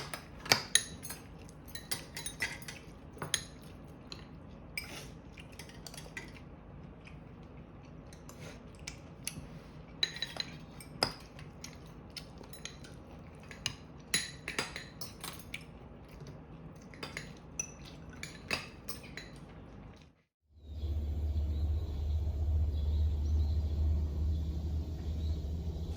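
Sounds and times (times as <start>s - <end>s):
cutlery and dishes clinking: 0.0s - 4.2s, 10.0s - 15.7s, 16.8s - 19.6s
steady low hum: 20.6s - 25.9s.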